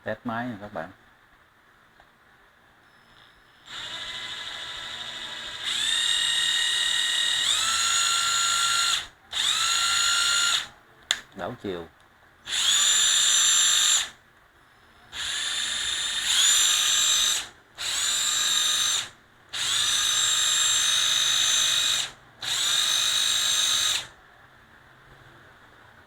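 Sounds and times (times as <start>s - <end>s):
impact driver motor whine: 3.7s - 10.7s, 12.5s - 14.1s, 15.2s - 24.2s.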